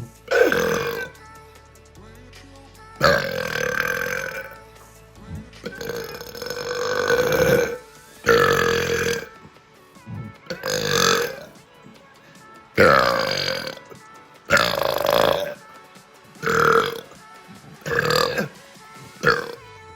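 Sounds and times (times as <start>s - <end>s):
person belching loudly: 0.0s - 1.2s, 3.0s - 4.7s, 5.4s - 9.4s, 10.1s - 11.6s, 12.8s - 15.6s, 16.4s - 17.2s, 17.8s - 19.7s.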